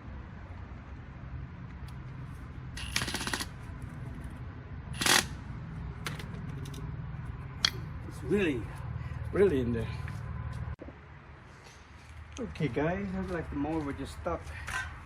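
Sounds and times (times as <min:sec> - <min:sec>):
rattle of tool clicks: 0:02.8 - 0:03.6.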